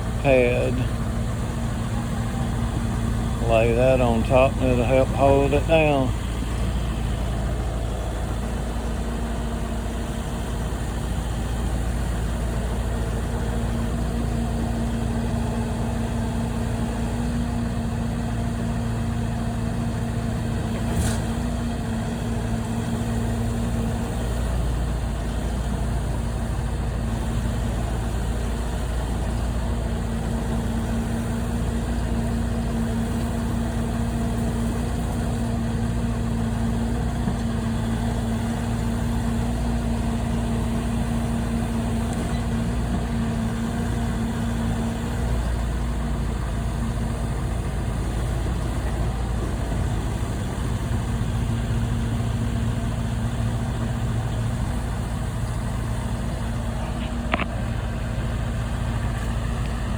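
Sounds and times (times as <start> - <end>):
engine idling: 0.0 - 59.9.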